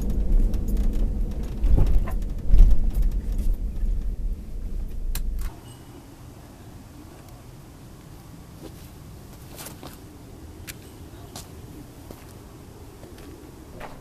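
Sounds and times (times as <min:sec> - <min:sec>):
sharp clicks and rattles: 0:00.0 - 0:05.6
vehicle road rumble: 0:00.0 - 0:14.0.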